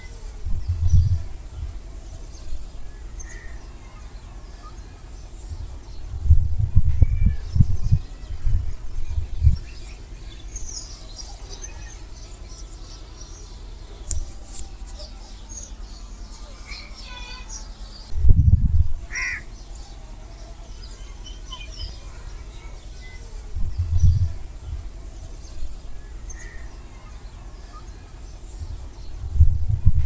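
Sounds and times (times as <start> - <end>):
birds chirping: 0.0 - 30.0
low rumbling thumps: 0.4 - 3.1, 5.5 - 10.7, 18.0 - 19.1, 23.5 - 26.2, 28.6 - 30.0
harsh caw-like bird calls: 19.1 - 19.6.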